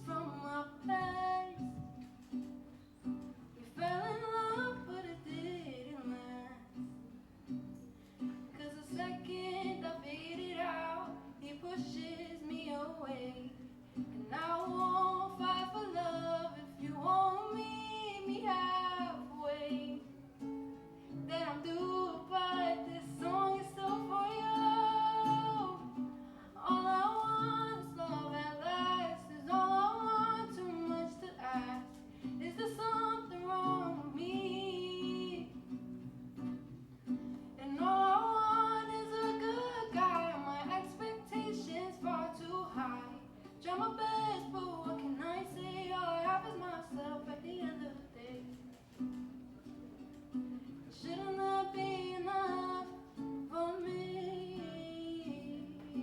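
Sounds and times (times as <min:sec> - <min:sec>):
woman singing pop ballad: 0:00.0 - 0:02.0, 0:03.6 - 0:06.9, 0:08.6 - 0:20.1, 0:21.2 - 0:35.6, 0:37.6 - 0:48.6, 0:51.0 - 0:56.0
acoustic guitar: 0:00.0 - 0:56.0.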